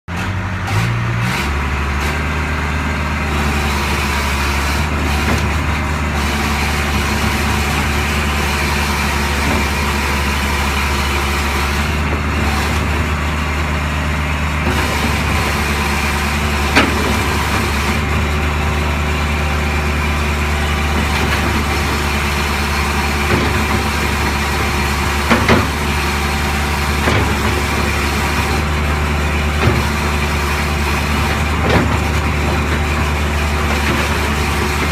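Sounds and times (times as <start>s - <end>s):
excavator diesel engine running: 0.1s - 34.9s
sharp knocks: 16.6s - 18.0s.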